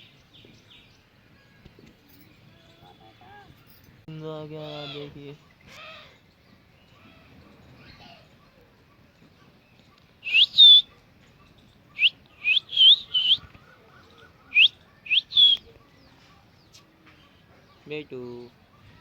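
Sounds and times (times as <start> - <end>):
baby parrot whistled calls: 10.2 - 10.9, 12.0 - 13.4, 14.6 - 15.7.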